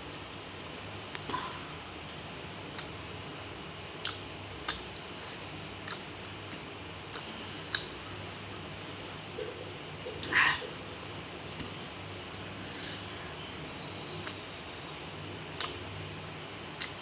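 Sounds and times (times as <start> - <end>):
chewing with mouth smacks: 1.1 - 9.6, 14.2 - 15.9, 16.8 - 17.0.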